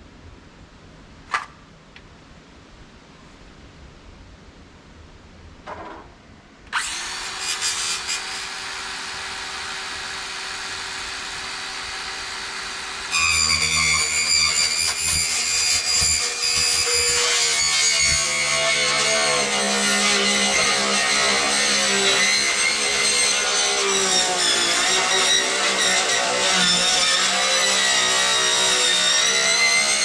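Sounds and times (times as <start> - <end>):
power saw cutting plastic pipe: 6.7 - 30.0.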